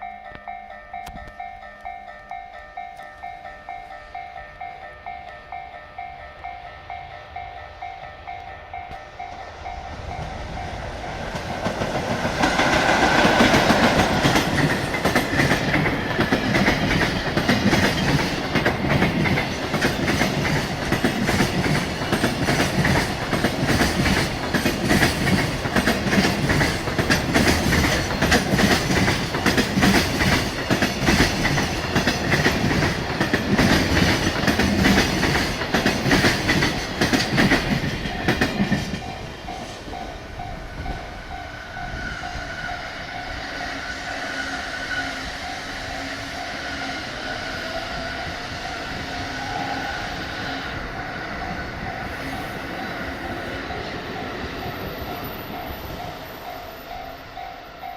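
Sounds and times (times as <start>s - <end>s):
level crossing warning bell: 0.0s - 11.3s
locomotive passing: 1.4s - 57.9s
train wheels clattering over rail joints: 11.1s - 39.8s.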